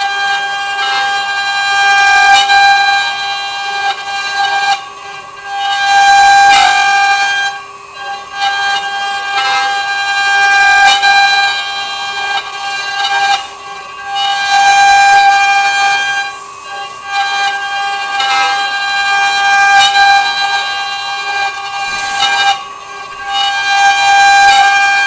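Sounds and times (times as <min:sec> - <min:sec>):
wood router high-pitched whine: 0:00.0 - 0:25.0.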